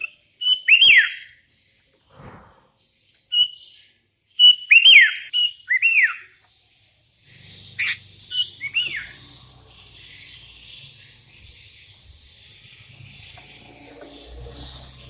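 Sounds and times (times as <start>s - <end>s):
bird singing whistled phrases: 0.0s - 1.4s, 3.2s - 6.4s, 7.7s - 9.2s.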